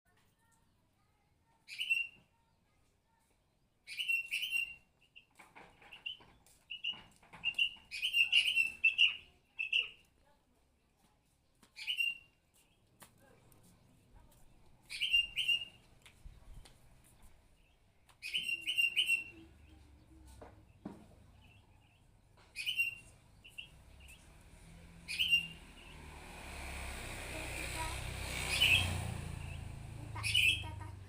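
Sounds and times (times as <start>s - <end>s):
bird chirping: 1.7s - 2.2s, 3.8s - 10.1s, 11.8s - 12.9s, 14.2s - 26.1s, 28.3s - 30.9s.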